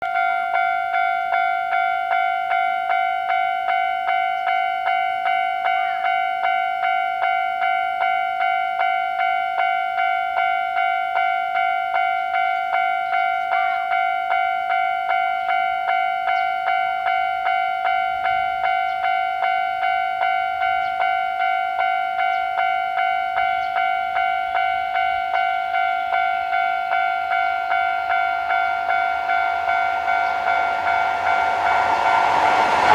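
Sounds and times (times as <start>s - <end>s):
level crossing warning bell ringing: 0.0s - 32.9s
train running noise: 23.2s - 32.9s.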